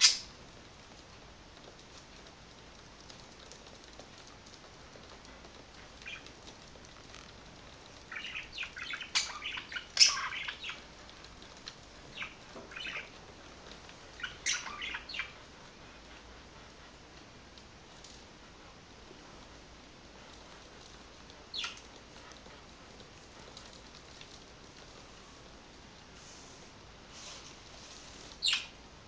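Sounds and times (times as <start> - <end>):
budgerigars chirping: 8.1 - 10.8, 12.2 - 13.1, 14.2 - 15.4, 21.5 - 21.8, 28.4 - 28.7.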